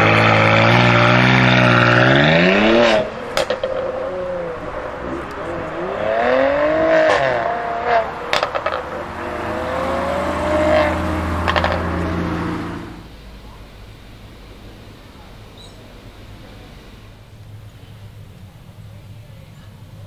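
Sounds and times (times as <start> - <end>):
exhaust crackles and pops: 0.0 - 12.2
car exhaust revving: 0.0 - 15.0.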